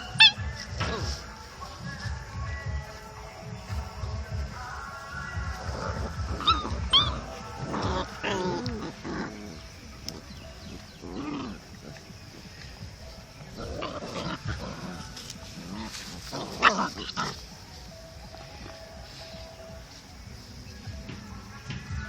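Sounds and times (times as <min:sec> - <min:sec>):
dogs yelping: 0:00.0 - 0:01.1, 0:05.6 - 0:12.4, 0:13.4 - 0:17.6
dog whining: 0:06.3 - 0:09.6.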